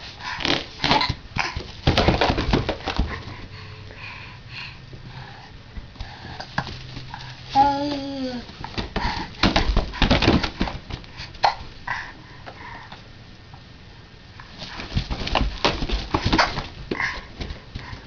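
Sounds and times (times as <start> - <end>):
balloons squeaking and rubbing: 0.0 - 1.2.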